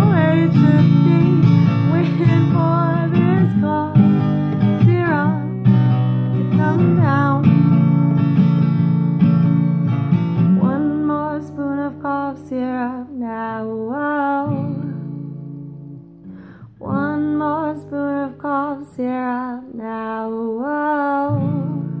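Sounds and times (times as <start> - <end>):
person singing: 0.0 - 4.0, 4.6 - 5.6, 6.5 - 7.7.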